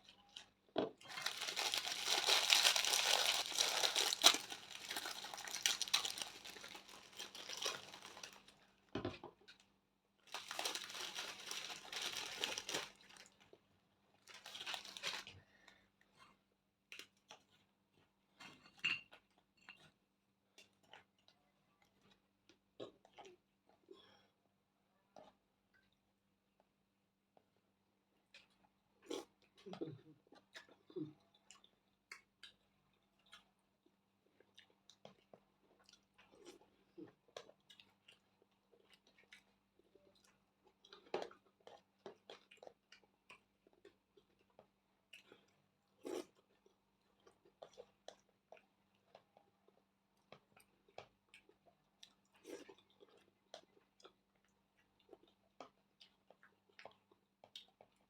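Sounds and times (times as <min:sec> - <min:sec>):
person chewing food: 0:00.2 - 0:08.7, 0:10.3 - 0:13.6, 0:28.2 - 0:29.7, 0:30.3 - 0:58.0.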